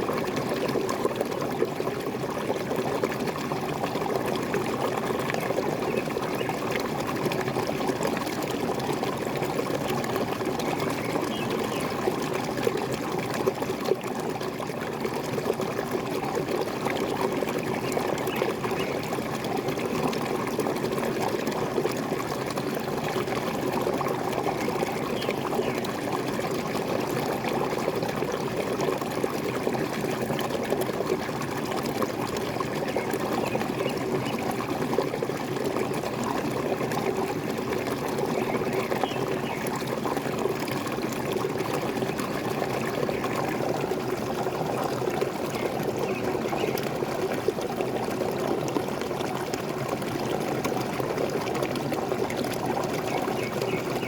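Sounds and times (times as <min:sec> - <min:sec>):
small waterfall splashing: 0:00.0 - 0:54.0.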